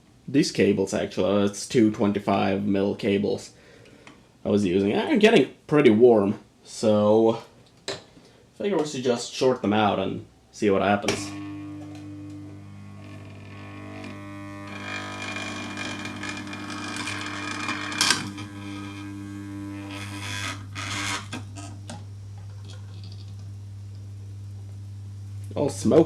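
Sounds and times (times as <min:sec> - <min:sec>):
welder transformer humming: 0:10.8 - 0:26.0.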